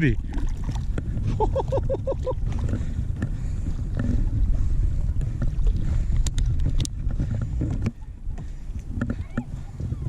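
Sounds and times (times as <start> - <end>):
wind rumbling on microphone: 0.0 - 10.0.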